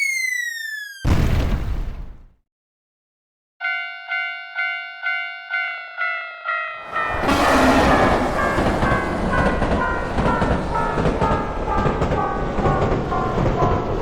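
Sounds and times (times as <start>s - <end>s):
two-tone crossing bell ringing: 3.6s - 14.0s
train passing clickety-clack: 6.5s - 14.0s.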